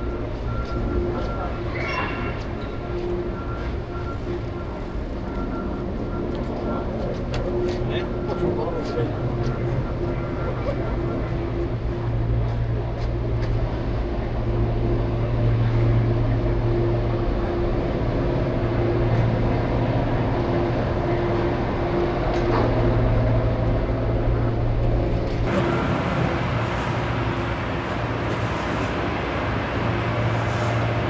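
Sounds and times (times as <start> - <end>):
vehicle engine hum: 0.0 - 31.0
road traffic: 16.9 - 31.0.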